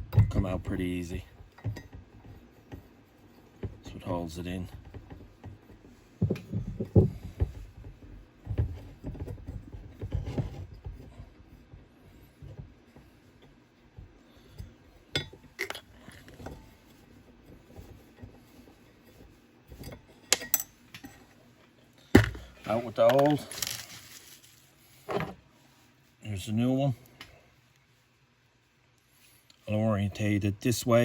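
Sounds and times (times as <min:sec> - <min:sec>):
small metal parts clinking: 0:23.0 - 0:24.6.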